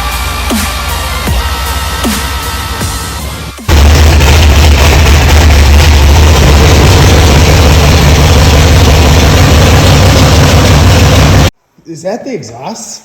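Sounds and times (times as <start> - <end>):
engine idling with low rumble: 3.7 - 11.5.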